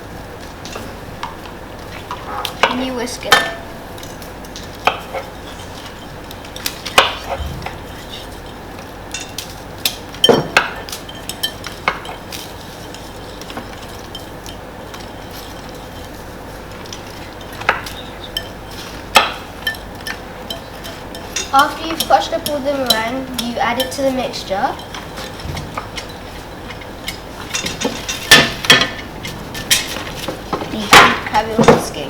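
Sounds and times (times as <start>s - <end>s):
utensil clinking against bowl: 9.2s - 32.0s
whisk stirring in a bowl: 10.9s - 28.4s.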